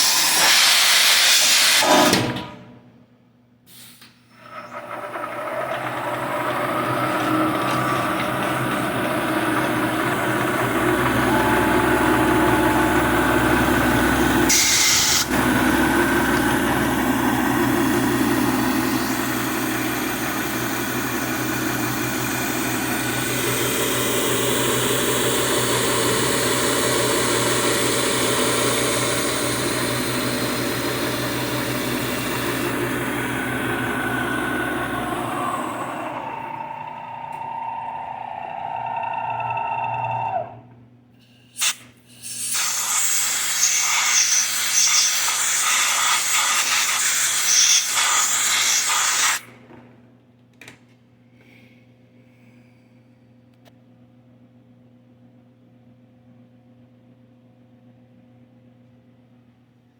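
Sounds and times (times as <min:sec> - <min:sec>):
short hiss: 0:03.7 - 0:04.3
milling machine running: 0:04.4 - 0:40.7.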